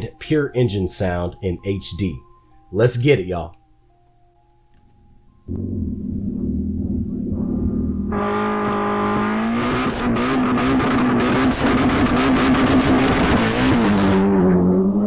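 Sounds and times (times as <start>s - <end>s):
rally car engine revving: 5.5s - 15.0s
sharp exhaust crackles: 5.5s - 15.0s.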